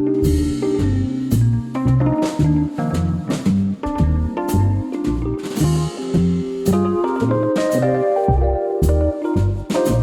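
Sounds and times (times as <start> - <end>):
instrumental band music: 0.0 - 10.0.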